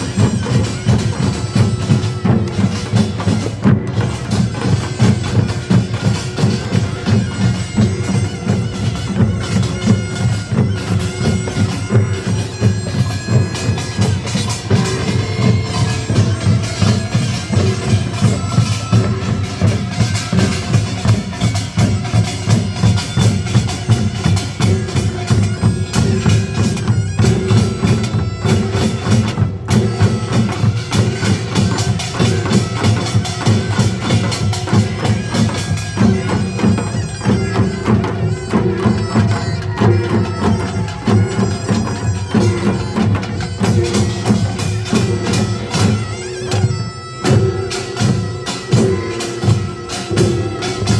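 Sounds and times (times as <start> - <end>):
gongs and drums beating: 0.0 - 50.9
reedy wind melody: 0.0 - 50.9.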